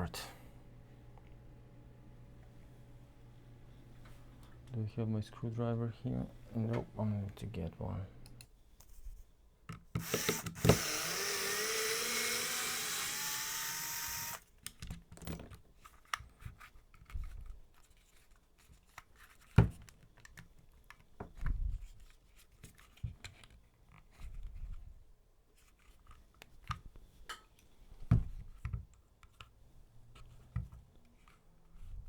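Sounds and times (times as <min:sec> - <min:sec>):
tools clicking and knocking: 0:10.0 - 0:11.2
small power tool motor: 0:10.0 - 0:14.4.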